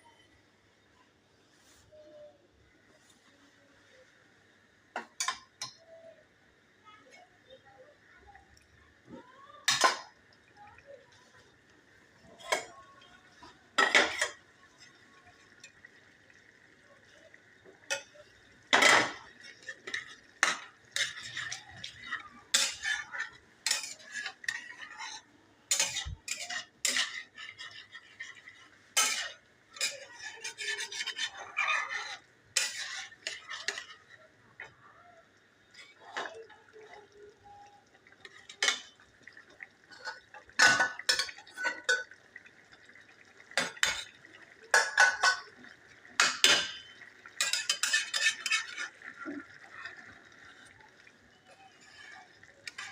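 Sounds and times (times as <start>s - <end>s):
metal spoon scraping pot: 18.8s - 34.2s, 46.2s - 50.0s.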